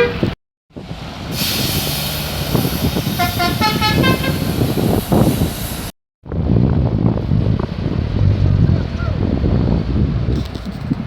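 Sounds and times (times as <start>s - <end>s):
bus horn playing short notes: 0.0s - 0.4s, 3.1s - 4.6s
engines rumbling: 0.0s - 11.0s.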